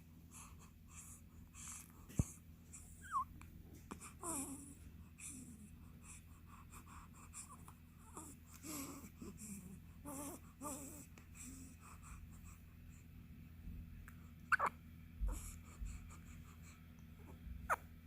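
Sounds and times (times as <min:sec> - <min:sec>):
baby hiccup squeaks: 0:14.5 - 0:14.8.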